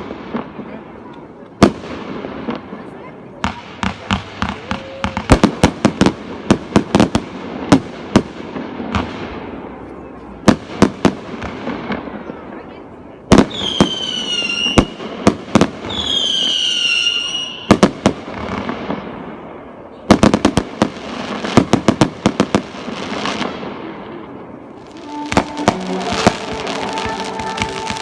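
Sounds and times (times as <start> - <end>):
firework bangs: 0.0 - 12.4, 13.3 - 28.0
falling firework whistles: 13.5 - 15.0, 15.8 - 17.7, 24.8 - 28.0
music: 24.9 - 28.0.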